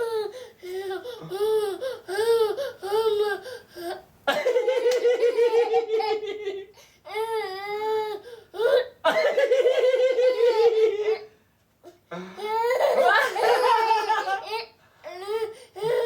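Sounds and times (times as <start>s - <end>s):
baby laughing: 4.4s - 6.7s, 9.3s - 11.3s, 12.6s - 14.7s.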